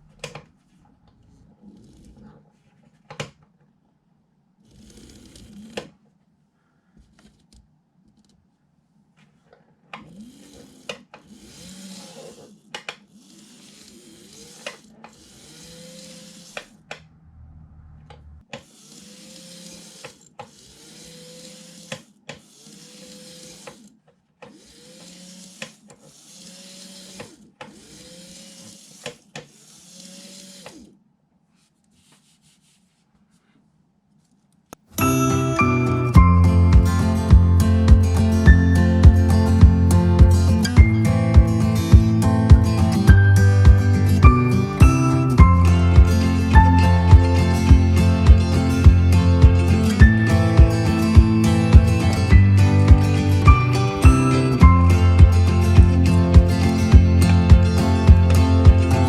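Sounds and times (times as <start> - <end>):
small electric motor whine: 10.1 - 16.9, 18.6 - 31.0.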